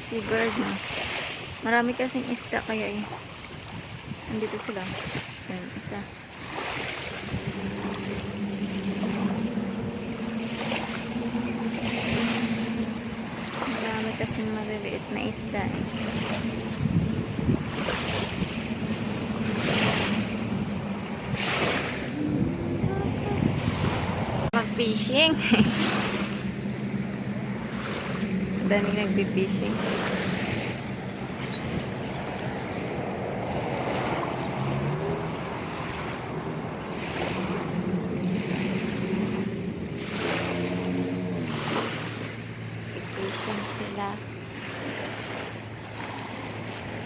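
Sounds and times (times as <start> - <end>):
ocean waves washing ashore: 0.0 - 47.0
steady low rumble: 1.5 - 47.0
steady low hum: 5.4 - 47.0.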